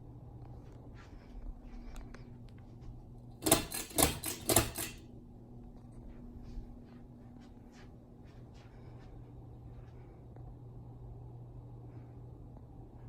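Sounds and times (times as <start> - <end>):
ceiling fan humming: 0.0 - 13.0
loud rattling clicks: 3.4 - 5.0.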